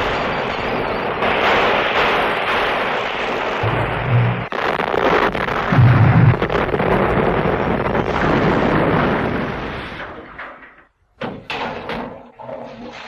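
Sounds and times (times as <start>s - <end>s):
cannon fire and explosions: 0.0s - 10.4s.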